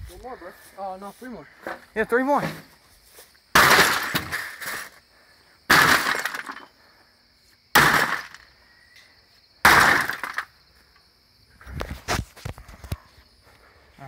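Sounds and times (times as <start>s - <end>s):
television smashing with breaking glass: 3.6s - 4.5s, 5.7s - 6.6s, 7.8s - 8.4s, 9.6s - 10.5s.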